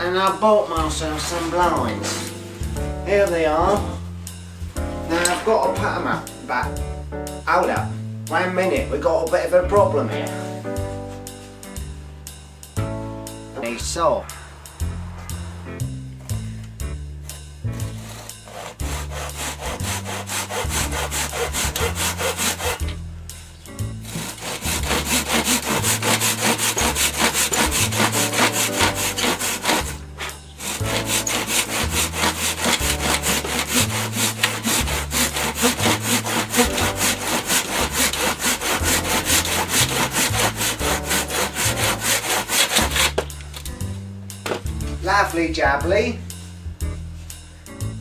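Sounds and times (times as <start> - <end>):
bass-heavy music: 0.0 - 48.0
hand saw cutting: 0.7 - 2.4, 17.2 - 23.0, 24.0 - 43.6.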